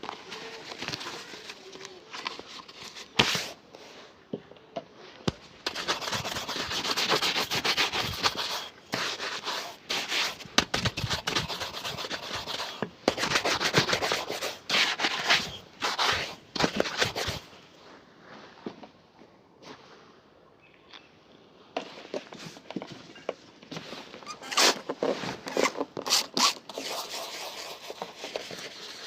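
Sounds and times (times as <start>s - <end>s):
rubbing strokes on shoe: 5.6s - 17.5s, 25.5s - 29.0s.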